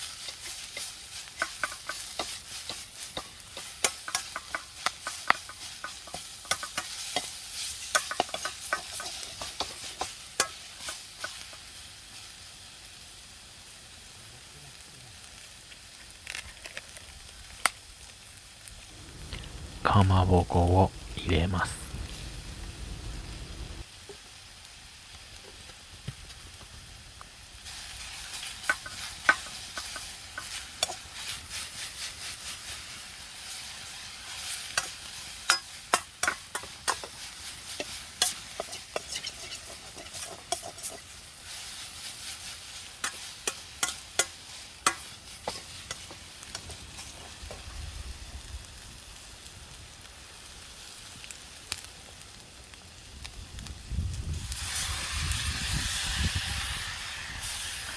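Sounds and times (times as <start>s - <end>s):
food sizzling in a pan: 0.0s - 57.9s
utensil clacking against pan: 0.3s - 11.4s.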